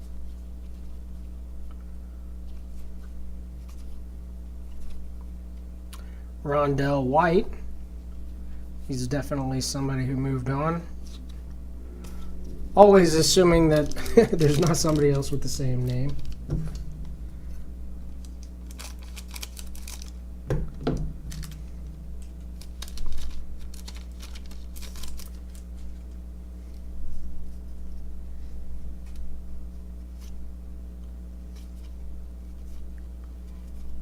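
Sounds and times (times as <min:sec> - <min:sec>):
steady low hum: 0:00.0 - 0:34.0
cards clicking and rustling: 0:13.7 - 0:16.8, 0:18.2 - 0:20.2, 0:21.3 - 0:26.1.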